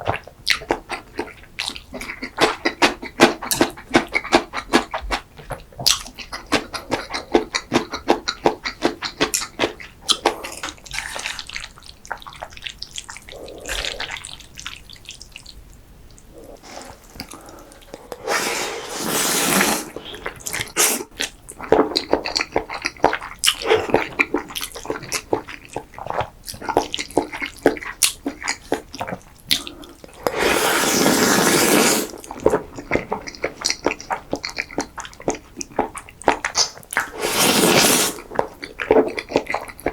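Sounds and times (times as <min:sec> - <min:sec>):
wet chewing and smacking: 0:00.0 - 0:18.2, 0:20.0 - 0:30.3, 0:32.2 - 0:37.1, 0:38.2 - 0:39.9
loud slurps: 0:16.3 - 0:21.1, 0:30.2 - 0:32.3, 0:37.0 - 0:38.3.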